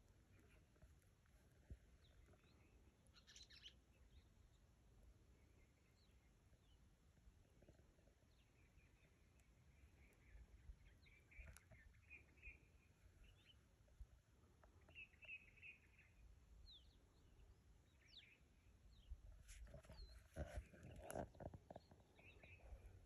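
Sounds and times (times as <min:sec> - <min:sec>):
small birds twittering: 0:01.6 - 0:04.7, 0:07.7 - 0:13.8, 0:14.4 - 0:23.0.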